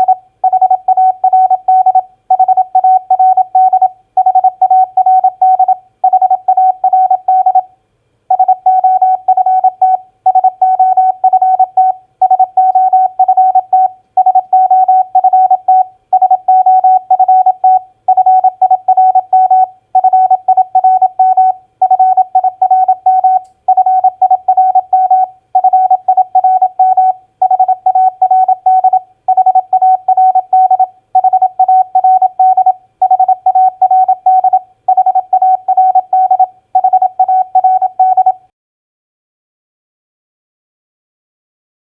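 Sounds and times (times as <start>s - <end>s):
morse code beeps: 0.0s - 7.6s, 8.3s - 38.4s.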